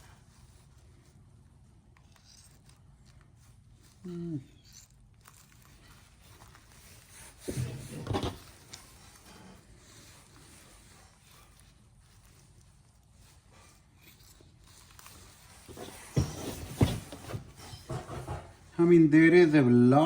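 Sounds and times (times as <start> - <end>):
man humming: 4.0 - 4.5
faint handling noise: 4.7 - 18.8.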